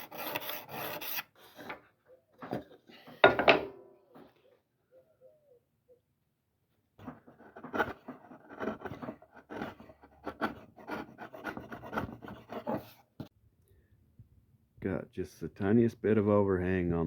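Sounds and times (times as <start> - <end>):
hand tool scraping wood: 0.0 - 1.9, 7.0 - 13.0.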